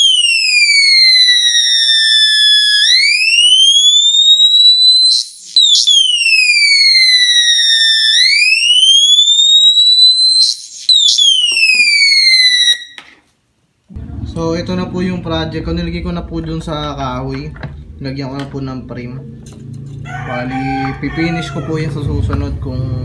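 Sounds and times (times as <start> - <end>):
electronic siren wailing: 0.0 - 13.0, 16.9 - 22.6
speaker crackle: 12.8 - 23.0.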